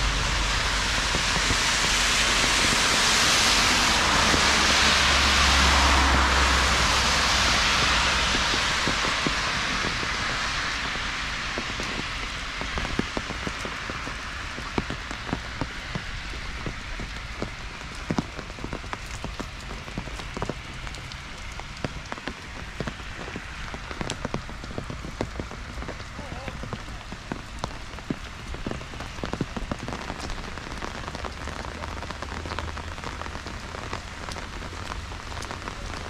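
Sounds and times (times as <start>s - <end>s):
heavy rain on a street: 0.0s - 36.0s
raindrops ticking close by: 0.0s - 36.0s.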